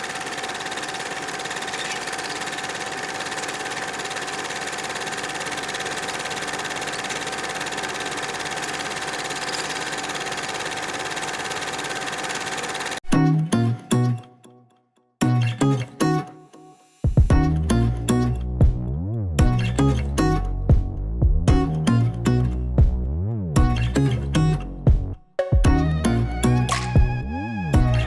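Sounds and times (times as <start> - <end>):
film projector clattering: 0.0 - 13.0.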